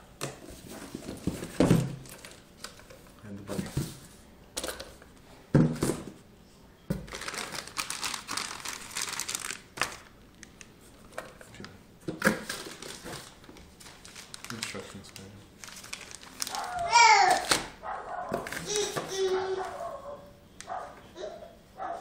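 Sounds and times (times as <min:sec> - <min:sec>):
packaging crinkling and rustling: 0:00.6 - 0:03.7, 0:06.9 - 0:19.8.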